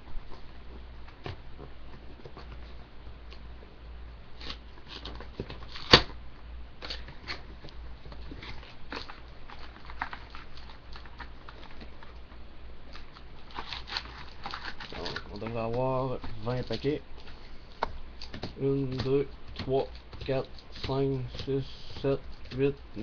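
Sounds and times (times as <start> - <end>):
wrapper crinkling and rustling: 6.8 - 17.4.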